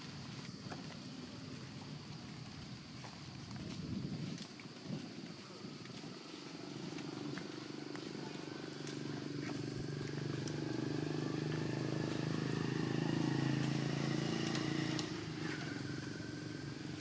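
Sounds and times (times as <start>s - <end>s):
motor engine humming: 5.4s - 17.0s.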